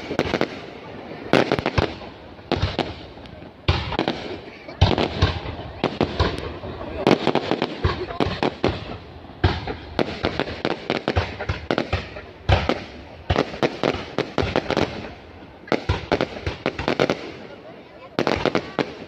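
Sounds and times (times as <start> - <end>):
fireworks bangs: 0.0 - 19.0.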